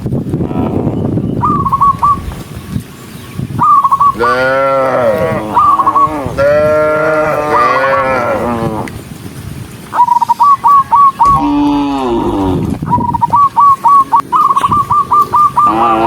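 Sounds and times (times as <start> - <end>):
cattle mooing: 4.2 - 9.0, 11.3 - 12.9, 15.6 - 16.0.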